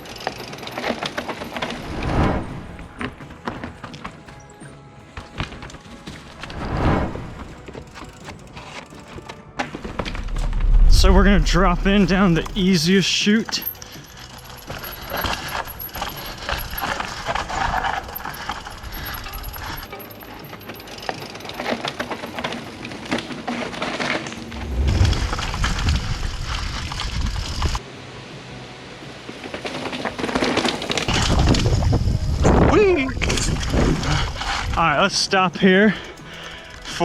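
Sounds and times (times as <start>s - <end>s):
bike chain jangling: 0.0s - 1.8s, 7.6s - 9.0s, 12.9s - 24.3s, 35.8s - 37.0s
low rumble: 9.9s - 12.9s, 24.4s - 27.8s.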